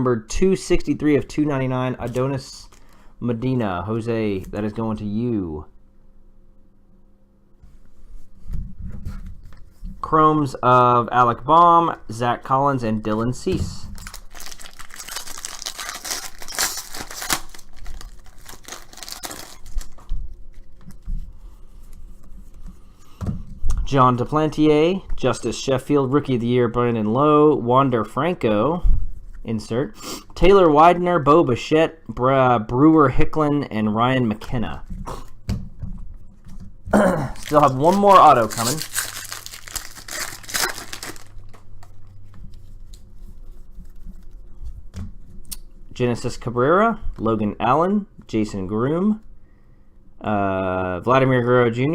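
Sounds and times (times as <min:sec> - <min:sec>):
foil wrapper crinkling and tearing: 0:13.9 - 0:20.8, 0:37.3 - 0:41.7.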